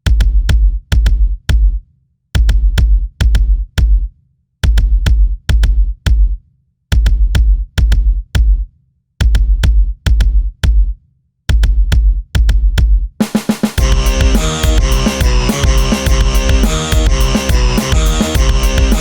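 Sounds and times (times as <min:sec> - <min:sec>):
drum machine beat: 0:00.1 - 0:01.8, 0:02.4 - 0:06.4, 0:07.0 - 0:08.6, 0:09.2 - 0:19.0.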